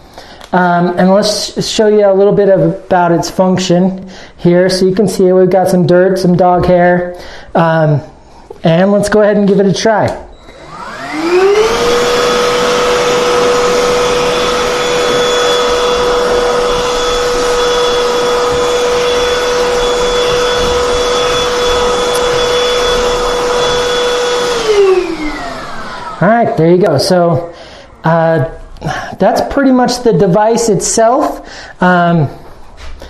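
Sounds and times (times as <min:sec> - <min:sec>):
handheld vacuum motor whine: 0:10.3 - 0:26.3.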